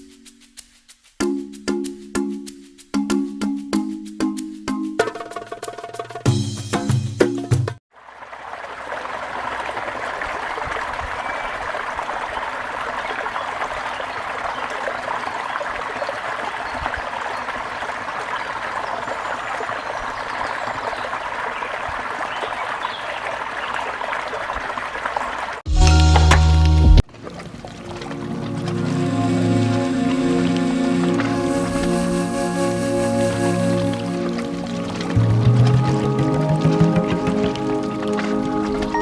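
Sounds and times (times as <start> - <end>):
running water rushing: 8.0 - 25.6, 27.0 - 39.0.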